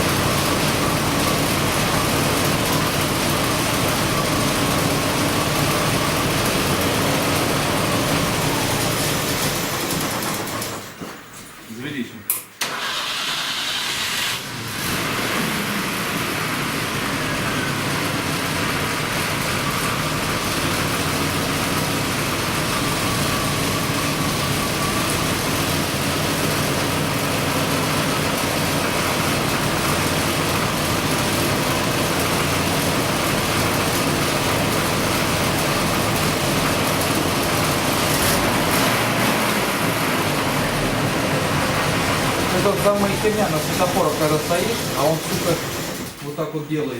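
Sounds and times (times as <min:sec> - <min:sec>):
car engine cranking and idling: 0:00.0 - 0:11.6, 0:12.6 - 0:46.9.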